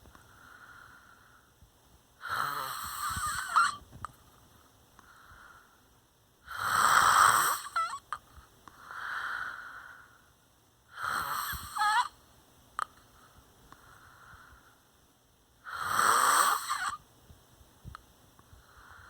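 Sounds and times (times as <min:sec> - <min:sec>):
snoring breaths: 0:02.2 - 0:03.8, 0:06.5 - 0:07.9, 0:10.9 - 0:12.1, 0:15.6 - 0:17.0.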